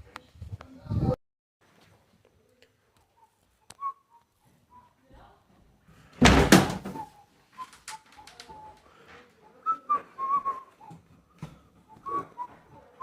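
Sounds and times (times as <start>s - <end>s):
person whistling a tune: 9.6s - 11.0s, 11.9s - 12.8s.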